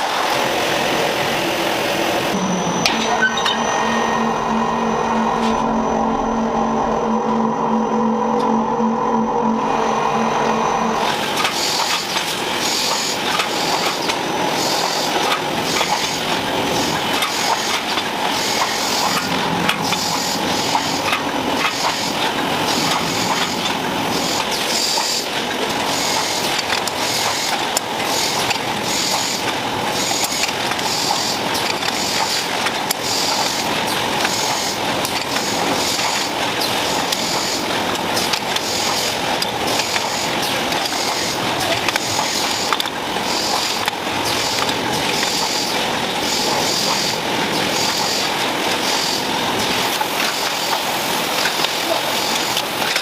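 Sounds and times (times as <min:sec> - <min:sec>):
production-line machinery clatter: 0:00.0 - 0:53.0
sharp mechanical pulse: 0:02.4 - 0:13.2.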